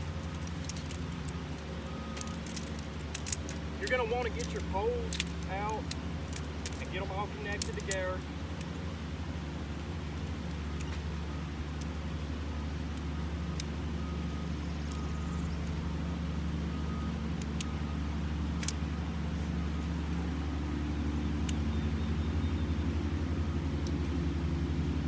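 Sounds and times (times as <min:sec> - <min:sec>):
tent poles clicking together: 0:00.0 - 0:08.8, 0:18.5 - 0:18.9
steady low hum: 0:00.0 - 0:25.0.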